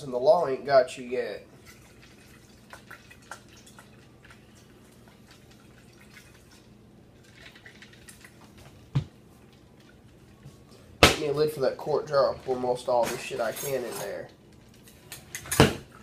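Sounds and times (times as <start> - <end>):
low steady hum: 0.0 - 16.0
liquid dripping: 1.5 - 10.6.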